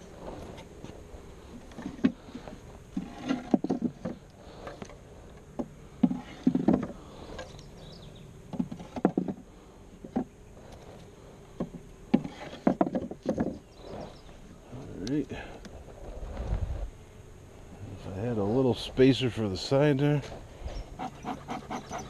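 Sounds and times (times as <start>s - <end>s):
honey bees humming: 0.0s - 22.0s
wooden hive boxes knocking: 3.0s - 4.3s, 5.4s - 7.6s, 8.4s - 10.4s, 11.5s - 13.8s.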